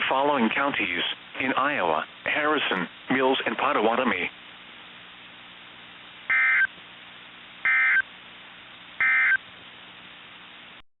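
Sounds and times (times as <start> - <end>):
faint steady hum and hiss: 0.0 - 10.8
digital data tone bursts: 6.3 - 6.7, 7.7 - 8.0, 9.0 - 9.4.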